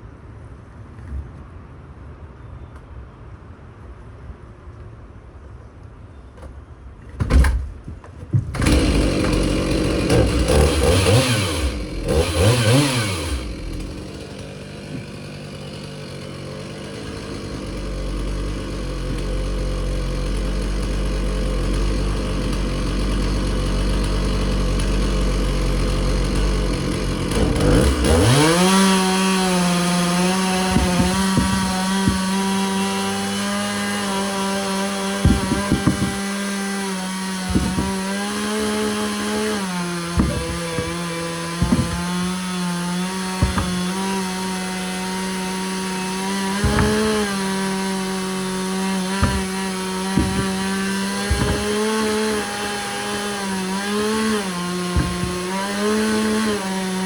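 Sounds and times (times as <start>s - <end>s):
chainsaw engine revving and idling: 8.5s - 57.0s.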